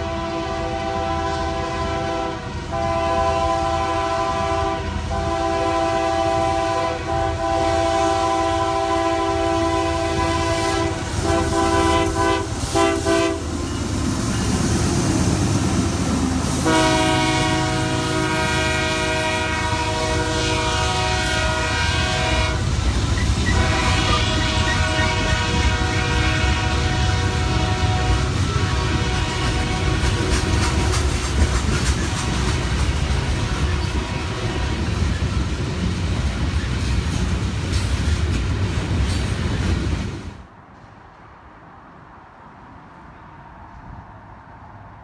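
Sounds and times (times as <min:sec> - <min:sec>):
locomotive air horn blasts: 0:00.0 - 0:13.8, 0:16.4 - 0:31.0, 0:33.8 - 0:34.8
diesel locomotive rumble: 0:00.0 - 0:40.6.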